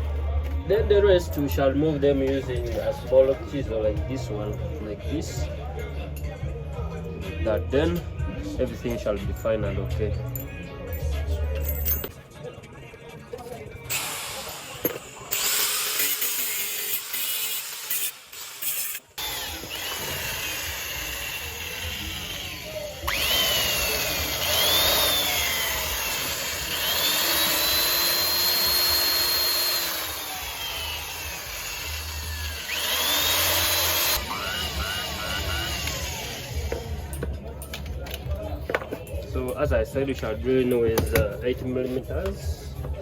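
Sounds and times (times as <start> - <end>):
power drill boring into metal: 13.9 - 37.2.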